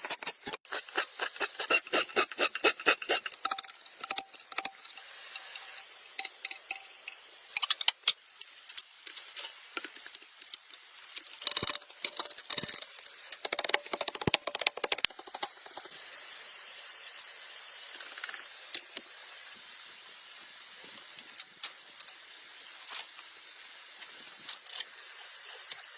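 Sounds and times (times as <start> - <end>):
steady high hiss: 2.4 - 25.9
scattered clicks and taps: 11.2 - 16.0.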